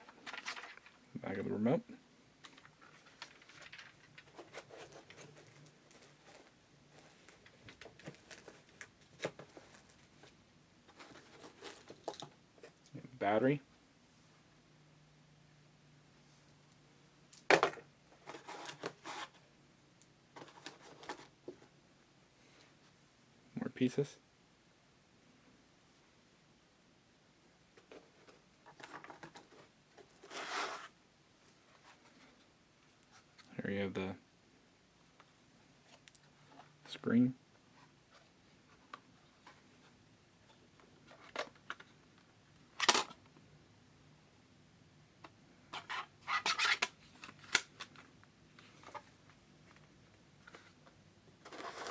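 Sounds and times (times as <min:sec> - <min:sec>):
plastic parts clattering: 0:00.0 - 0:01.0, 0:02.4 - 0:06.4, 0:42.8 - 0:43.2
packaging crinkling and rustling: 0:00.0 - 0:01.1, 0:02.4 - 0:12.4, 0:51.4 - 0:51.9.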